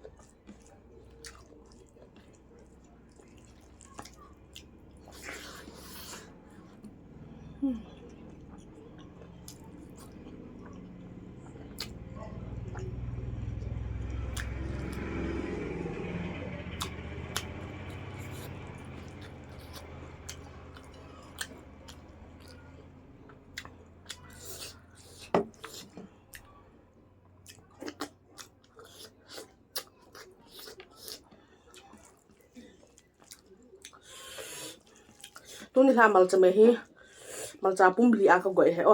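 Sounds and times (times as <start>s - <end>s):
person chewing: 0.0s - 7.0s, 7.6s - 13.1s, 14.3s - 15.0s, 16.8s - 22.7s, 23.5s - 26.6s, 27.4s - 35.7s.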